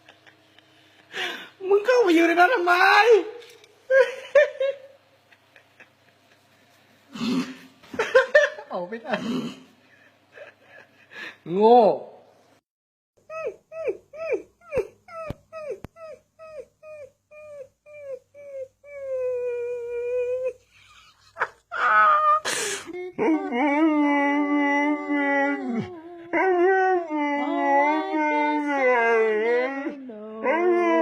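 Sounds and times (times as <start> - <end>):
puppy whimpering and whining: 13.3 - 20.6.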